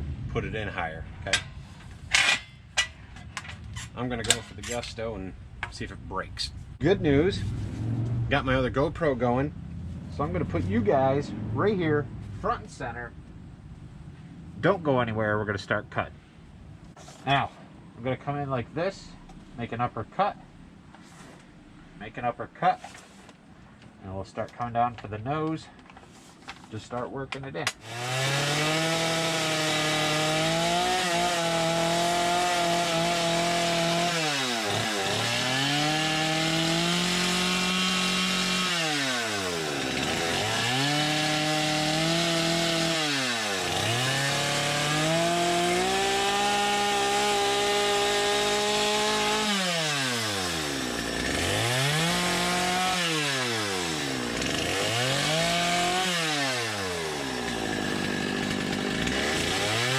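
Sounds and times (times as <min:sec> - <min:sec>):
chainsaw cutting wood: 0:27.7 - 0:59.9.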